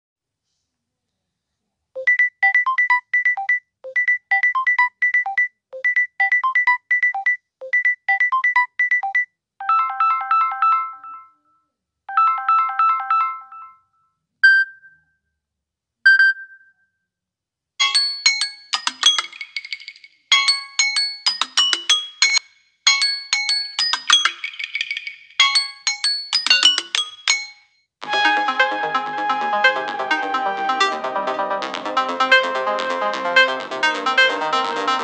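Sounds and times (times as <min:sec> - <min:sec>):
phone ringtones: 0:02.0 - 0:11.4, 0:12.1 - 0:15.0, 0:17.8 - 0:27.7.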